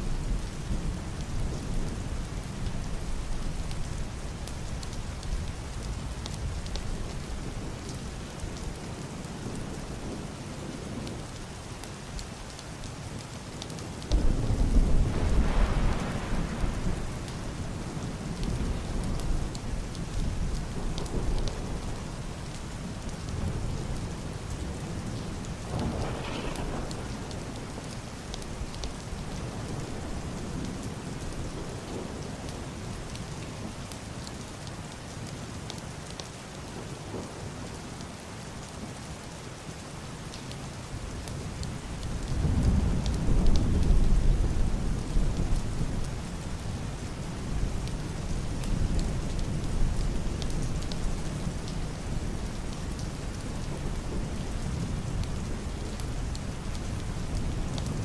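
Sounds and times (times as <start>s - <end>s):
heavy rain falling: 0.0s - 58.0s
muffled rolling thunder: 13.8s - 33.1s, 41.4s - 58.0s.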